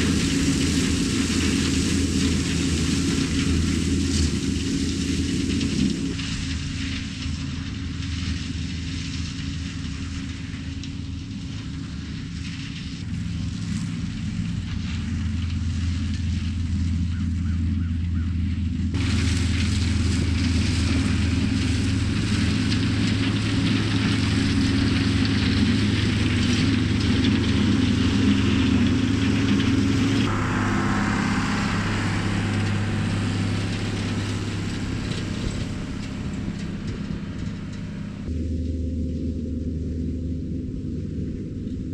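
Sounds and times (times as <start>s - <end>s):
shredder rushing noise: 0.0s - 6.6s, 19.0s - 38.3s
tractor engine running: 0.0s - 41.9s.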